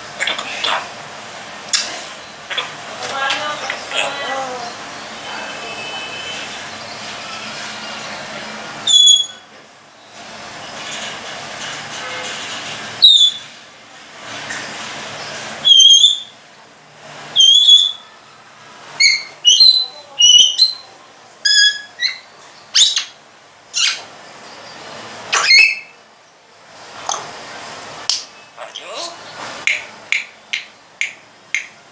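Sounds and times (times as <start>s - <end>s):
parrot whistles and squawks: 8.8s - 9.4s, 13.0s - 13.5s, 15.6s - 16.4s, 17.4s - 18.2s, 19.0s - 24.1s, 25.3s - 26.0s.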